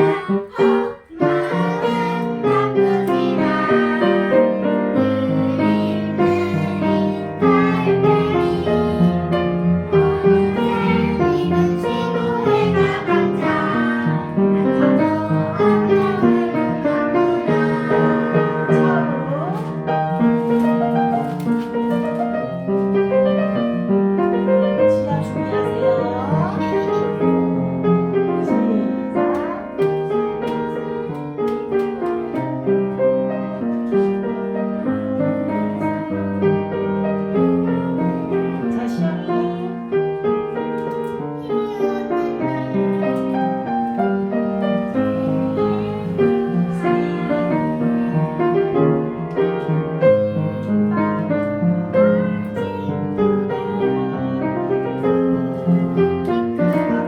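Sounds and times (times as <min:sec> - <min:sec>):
faint singing voices: 0:00.0 - 0:19.8, 0:44.8 - 0:49.0
piano accompaniment: 0:00.0 - 0:57.0.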